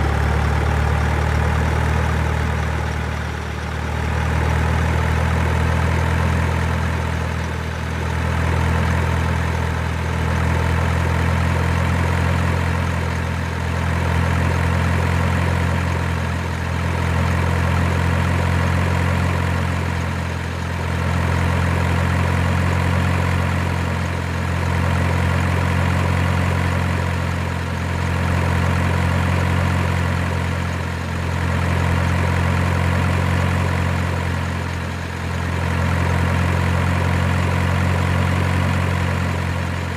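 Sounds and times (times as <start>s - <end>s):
truck engine idling: 0.0s - 39.9s.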